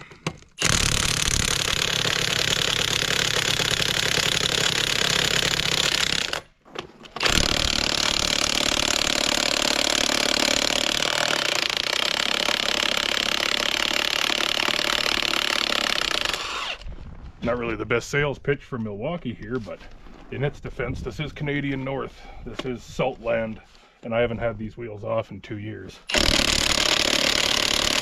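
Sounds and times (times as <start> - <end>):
impact wrench hammering: 0.6 - 6.5, 7.2 - 16.8, 26.1 - 28.0.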